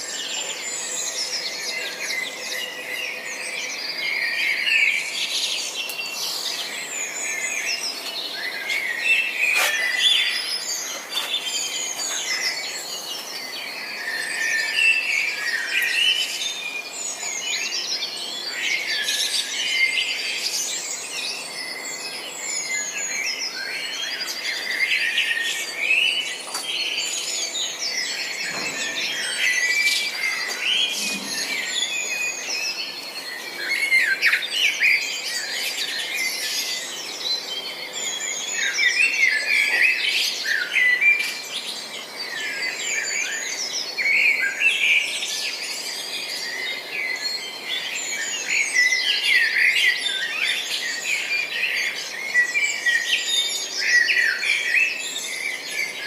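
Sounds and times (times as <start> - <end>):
songbirds chirping and singing: 0.0 - 56.0.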